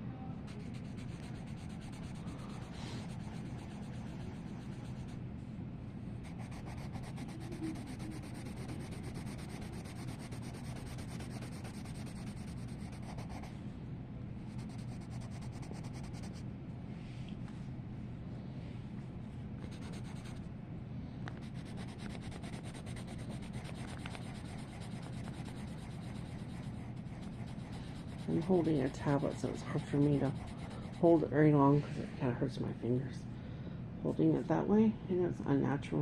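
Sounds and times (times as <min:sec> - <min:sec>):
colored pencil shading on paper: 0:00.5 - 0:05.1, 0:06.2 - 0:13.5, 0:19.7 - 0:20.4, 0:21.4 - 0:31.3.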